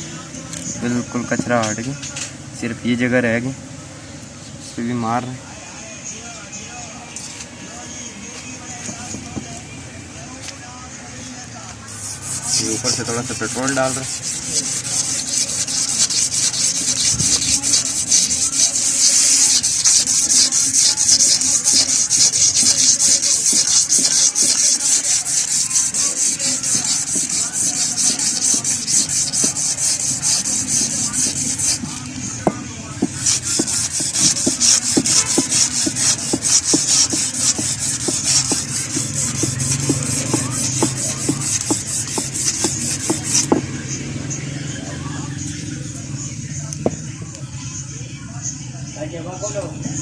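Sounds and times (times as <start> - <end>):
abrasive paper scraping metal: 11.8 - 43.6.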